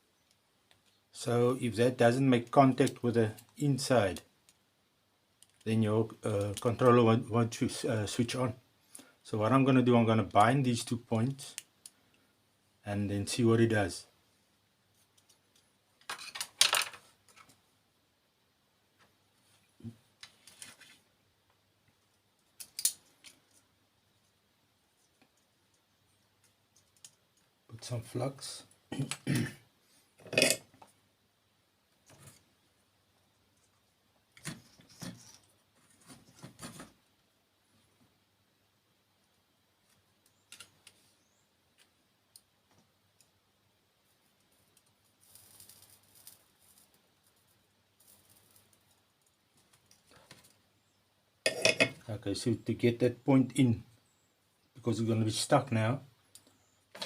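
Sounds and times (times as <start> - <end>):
small tools clicking: 22.6 - 23.5.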